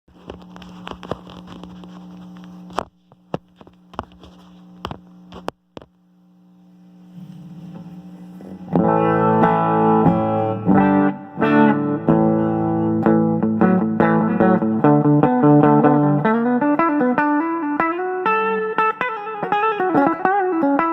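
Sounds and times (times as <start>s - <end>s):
amplifier humming: 0.1s - 20.9s
distorted electric guitar playing: 7.2s - 20.9s.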